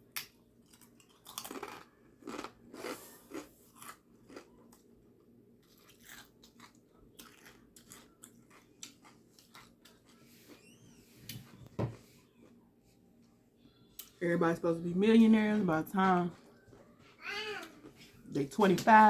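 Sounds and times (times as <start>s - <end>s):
biting a sandwich: 0.2s - 4.9s, 5.6s - 10.8s
crunchy chewing: 0.2s - 4.9s, 5.6s - 10.7s
wet chewing and mouth clicks: 5.6s - 10.2s.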